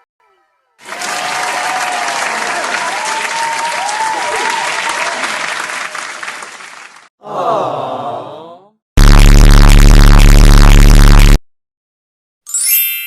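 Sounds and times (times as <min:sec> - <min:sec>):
cheering whistles: 0:00.8 - 0:06.8
crowd clapping: 0:00.8 - 0:07.1
sliding voice-like effect: 0:07.2 - 0:08.8.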